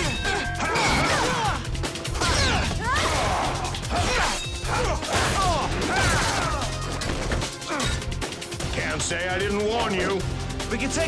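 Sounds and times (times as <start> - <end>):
action music: 0.0 - 11.0.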